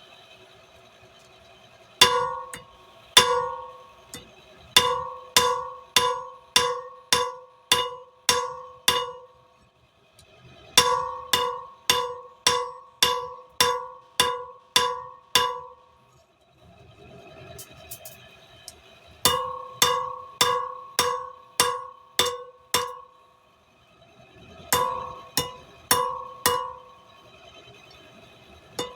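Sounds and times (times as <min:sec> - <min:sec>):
hammer striking steel on anvil: 0:02.0 - 0:09.4, 0:10.6 - 0:15.9, 0:19.3 - 0:23.2, 0:24.7 - 0:27.0.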